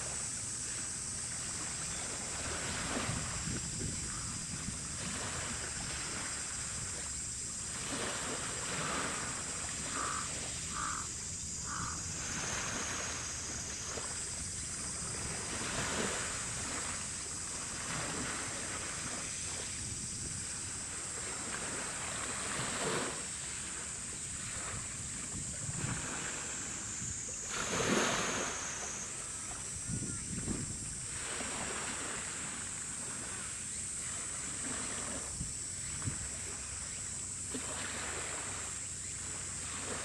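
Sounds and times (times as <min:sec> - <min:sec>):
steady high-pitched hiss: 0:00.0 - 0:40.0
wind buffeting microphone: 0:01.9 - 0:07.0, 0:24.3 - 0:28.4, 0:29.4 - 0:32.6, 0:35.2 - 0:36.4.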